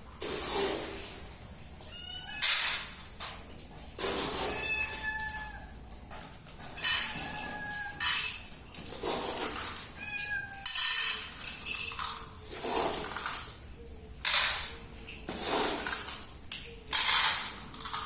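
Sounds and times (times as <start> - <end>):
cat meowing: 1.8 - 2.6, 4.4 - 5.8, 6.8 - 8.1, 9.9 - 10.8.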